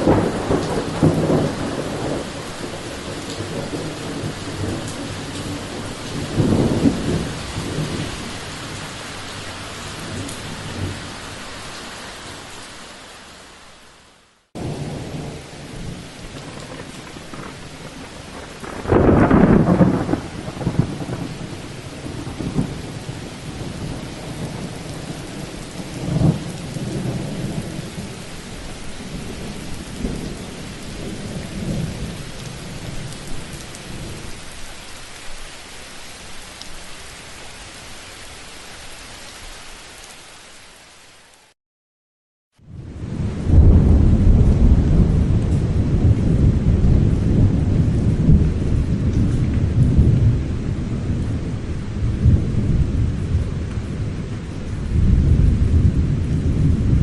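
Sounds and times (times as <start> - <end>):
rolling thunder: 0.0 - 8.8, 14.6 - 34.2, 42.7 - 57.0
steady rain: 0.0 - 41.6, 42.6 - 57.0.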